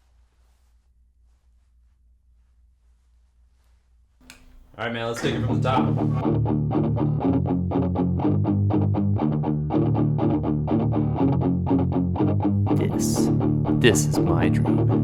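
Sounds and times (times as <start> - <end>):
guitar picking fast notes: 12.7 - 15.0
steady bass line: 12.7 - 15.0.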